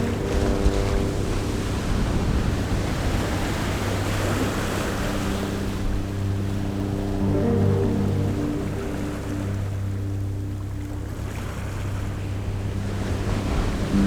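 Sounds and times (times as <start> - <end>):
background music with held tones: 0.0 - 14.0.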